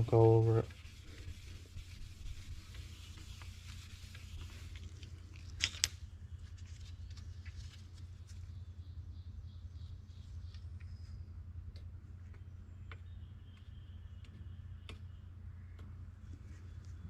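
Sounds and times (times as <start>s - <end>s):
cloth rubbing on metal: 0.0s - 5.3s
faint handling noises: 0.0s - 8.6s
low steady hum: 0.0s - 17.0s.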